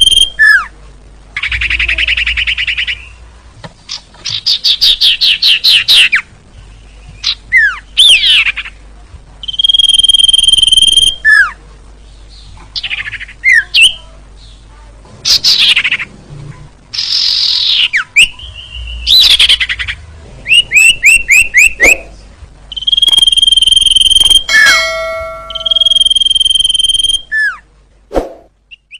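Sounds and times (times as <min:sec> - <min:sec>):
songbird calling: 0:17.0 - 0:24.9, 0:25.5 - 0:27.5
high whistled bird notes: 0:20.4 - 0:22.1, 0:22.7 - 0:27.6.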